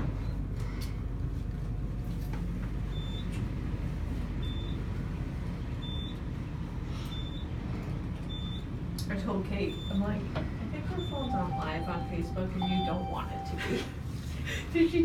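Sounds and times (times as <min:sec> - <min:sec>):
elevator rumble and hum: 0:00.0 - 0:15.0
short high beeps: 0:11.3 - 0:13.8.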